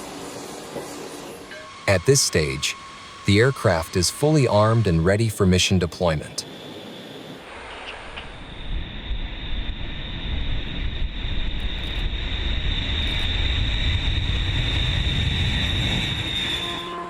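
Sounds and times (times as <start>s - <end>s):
jet engines running: 0.0s - 17.0s.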